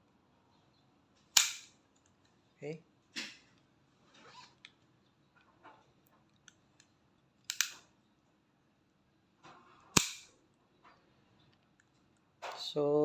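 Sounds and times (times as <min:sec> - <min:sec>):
pistol mechanism clicks and snaps: 0:01.4 - 0:02.2, 0:06.4 - 0:07.9, 0:10.0 - 0:10.3.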